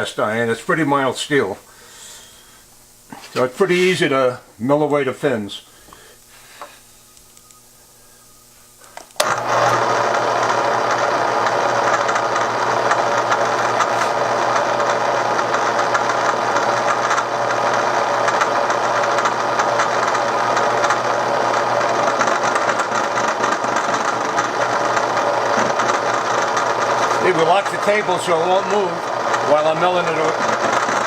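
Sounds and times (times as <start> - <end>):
low motor hum: 6.9 - 31.0
milling machine cutting metal: 9.2 - 31.0.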